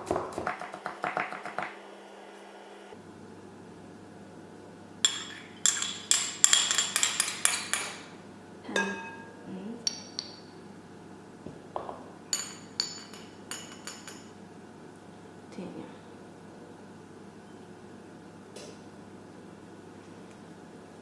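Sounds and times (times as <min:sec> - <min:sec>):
utensil clinking against bowl: 0:05.0 - 0:08.1, 0:08.7 - 0:10.5, 0:11.8 - 0:14.3.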